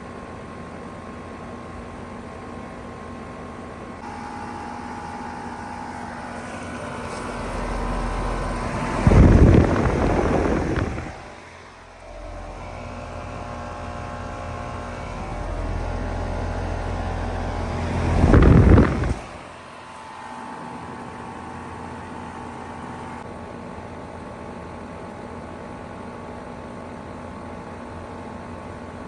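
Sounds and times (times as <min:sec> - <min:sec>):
heat pump humming: 0:00.0 - 0:23.3
loud rush of noise: 0:07.4 - 0:11.3, 0:15.0 - 0:19.4.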